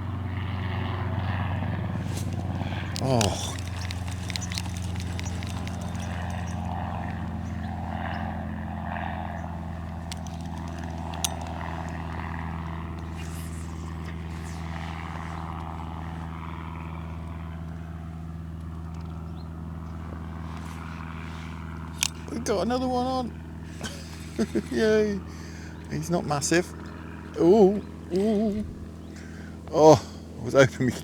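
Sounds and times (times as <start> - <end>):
low mechanical hum: 0.0 - 31.0.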